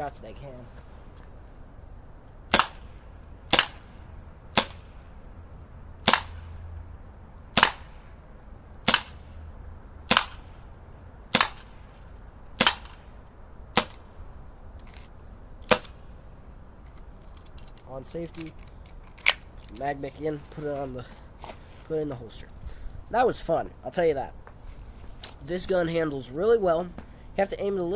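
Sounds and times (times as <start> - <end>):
bb pistol firing: 2.5 - 2.9, 3.5 - 3.9, 4.5 - 5.0, 6.0 - 6.4, 7.6 - 8.0, 8.8 - 9.2, 10.1 - 10.6, 11.3 - 11.8, 12.6 - 13.1, 13.7 - 14.0, 15.6 - 16.0.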